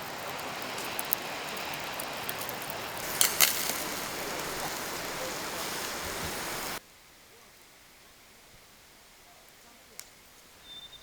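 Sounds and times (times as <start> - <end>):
river rushing: 0.0 - 6.8.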